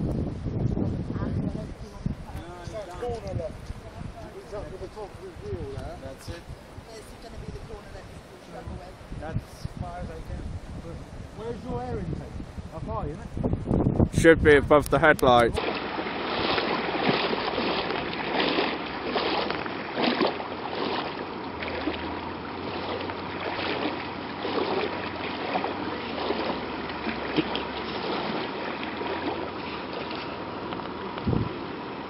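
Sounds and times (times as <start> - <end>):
floodwater splashing and sloshing: 15.4 - 32.0.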